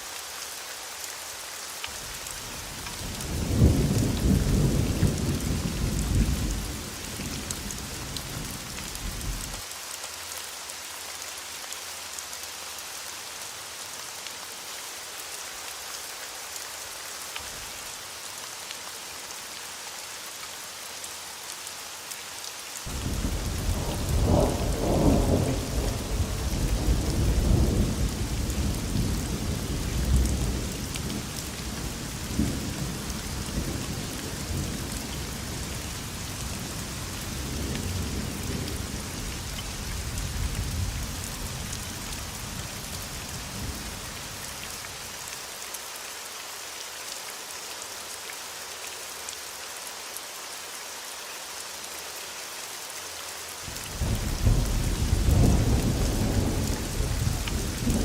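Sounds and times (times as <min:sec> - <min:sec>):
rain hissing: 0:00.0 - 0:58.0
thunder rumbling: 0:22.9 - 0:31.2, 0:54.0 - 0:58.0.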